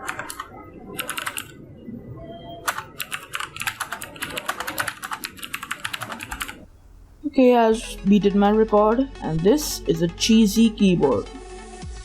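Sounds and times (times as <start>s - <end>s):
mechanical keyboard clicking: 0.0s - 1.5s, 2.7s - 6.6s.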